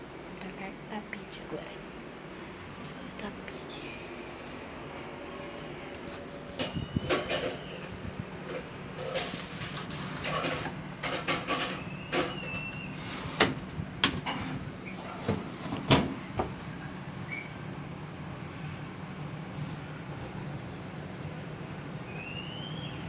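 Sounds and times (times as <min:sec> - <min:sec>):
washing machine motor hum: 0:00.0 - 0:23.0
clunks from washing machine drum: 0:10.3 - 0:16.8.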